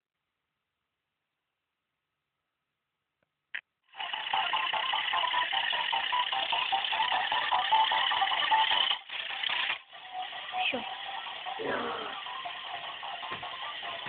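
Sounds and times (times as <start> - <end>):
alarm clock ringing: 3.9 - 14.0.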